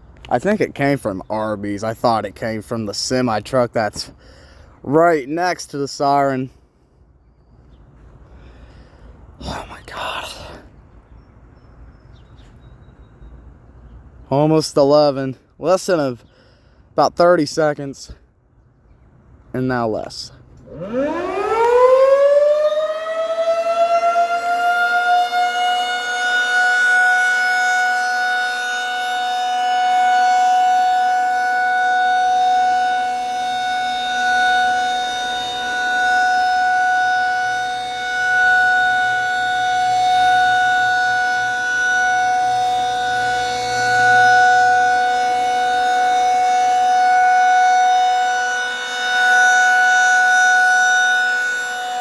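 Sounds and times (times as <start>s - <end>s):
warning siren two-note wail: 20.6s - 52.0s.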